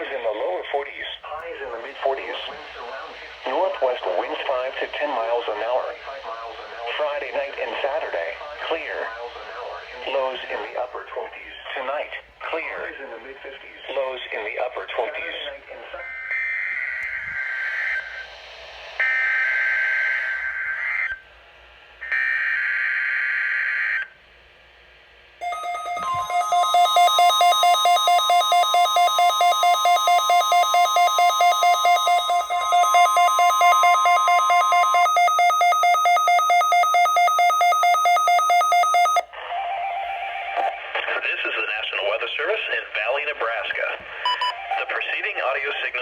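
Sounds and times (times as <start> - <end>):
screechy warbling data bursts: 25.4 - 39.2
rapid receiver beeping: 25.4 - 39.3
steady warning alarm tone: 25.4 - 40.5.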